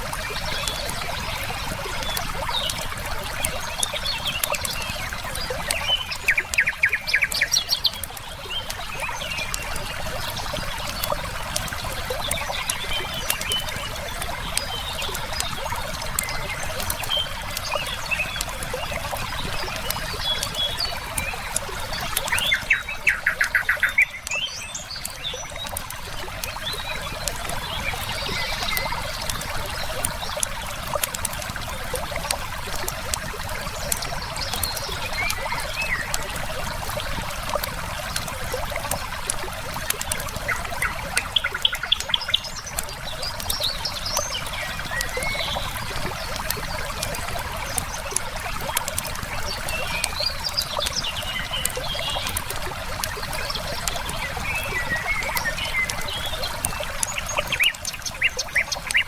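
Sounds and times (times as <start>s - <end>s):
birds chirping: 0.0s - 59.0s
river water running: 0.0s - 59.0s
wood fire crackling and popping: 0.0s - 59.0s.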